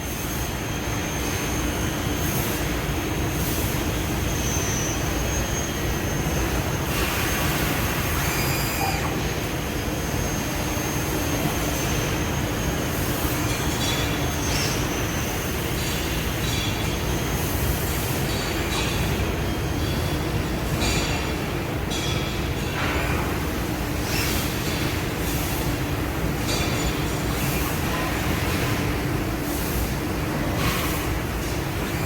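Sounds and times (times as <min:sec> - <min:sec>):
high-pitched machine squeaks: 0:08.1 - 0:12.2.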